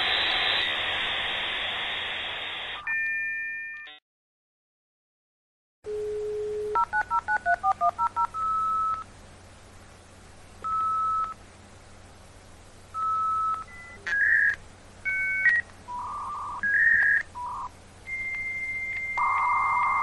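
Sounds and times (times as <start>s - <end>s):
dial tone: 5.9s - 9.0s, 13.0s - 14.5s, 15.1s - 20.0s
touch-tone digits: 5.9s - 9.0s, 10.6s - 11.4s, 13.0s - 20.0s.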